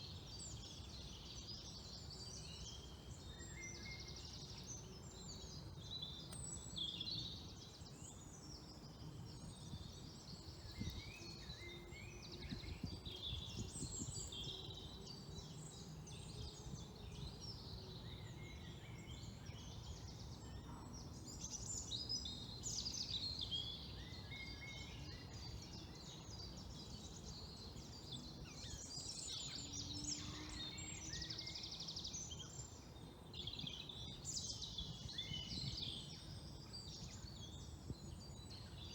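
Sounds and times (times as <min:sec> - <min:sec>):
birds singing: 0:00.0 - 0:38.9.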